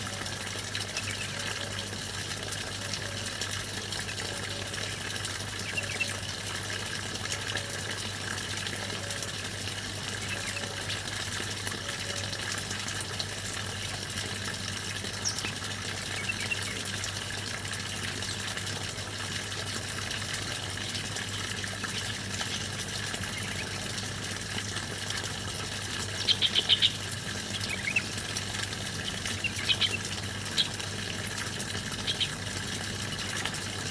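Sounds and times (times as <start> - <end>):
flowing water rushing: 0.0 - 33.9
high bird chirps: 26.1 - 27.0, 27.6 - 28.1, 29.3 - 30.7, 32.0 - 32.4.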